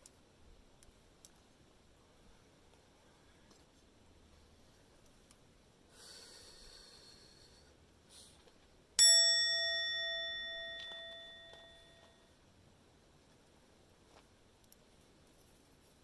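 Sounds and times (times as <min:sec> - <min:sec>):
faint hiss: 0:00.0 - 0:16.0
metal struck ringing: 0:09.0 - 0:12.2.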